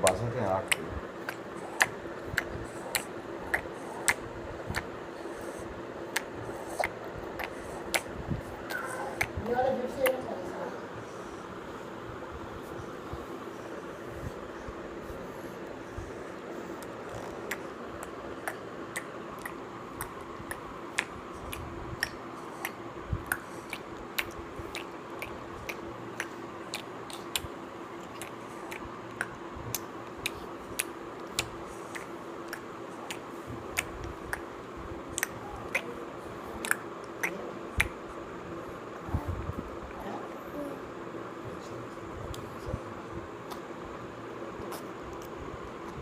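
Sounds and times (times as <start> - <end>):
steady background hum: 0.0 - 46.0.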